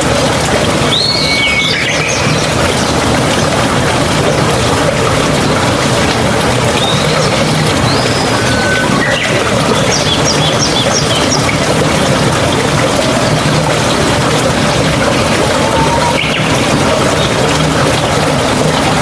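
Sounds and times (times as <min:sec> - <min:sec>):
babbling water running: 0:00.0 - 0:19.0
birds chirping: 0:00.8 - 0:03.7, 0:06.6 - 0:18.2
bird whistle: 0:00.9 - 0:02.2, 0:07.9 - 0:09.4.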